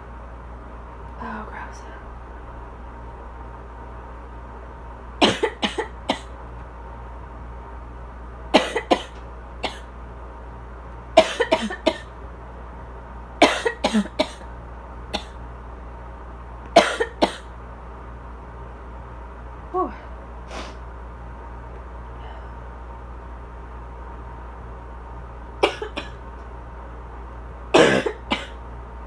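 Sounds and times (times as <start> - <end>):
air conditioner hum: 0.0 - 29.0
person coughing: 5.2 - 6.3, 8.6 - 9.9, 11.2 - 12.1, 13.4 - 14.4, 15.2 - 15.4, 16.8 - 17.5, 25.6 - 26.2, 27.8 - 28.6.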